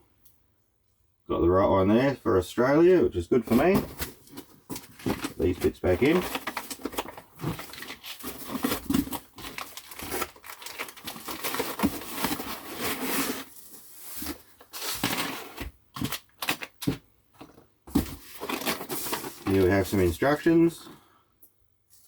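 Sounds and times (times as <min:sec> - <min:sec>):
packaging rustling and crinkling: 0:03.4 - 0:20.6.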